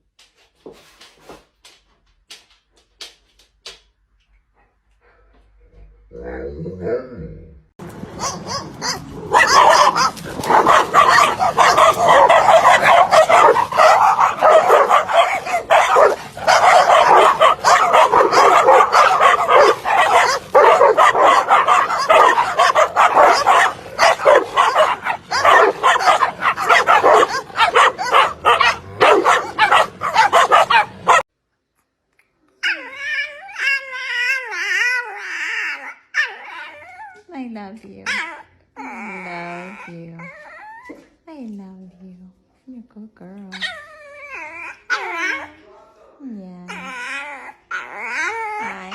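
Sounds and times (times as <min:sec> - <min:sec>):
dog barking and yipping: 0:08.1 - 0:31.3, 0:43.6 - 0:45.6.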